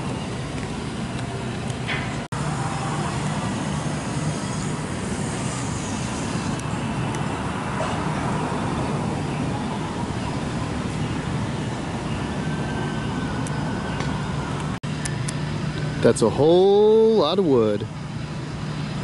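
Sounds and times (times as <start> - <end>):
cars passing: 0.0 - 19.0.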